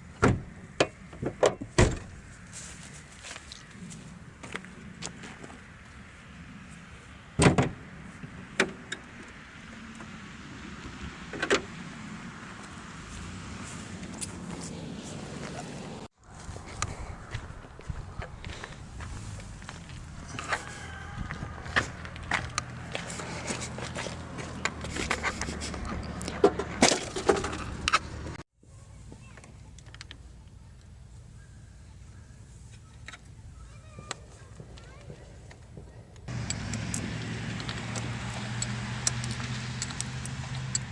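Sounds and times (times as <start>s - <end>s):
vehicle parts knocking and clunking: 0.1s - 2.2s, 7.4s - 9.4s, 11.2s - 11.8s, 21.7s - 28.4s.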